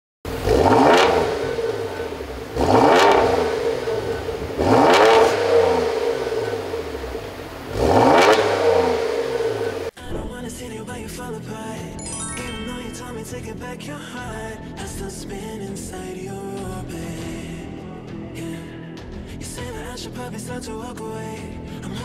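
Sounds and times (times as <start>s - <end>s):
car engine idling: 0.3s - 9.9s
car engine revving: 0.3s - 10.0s.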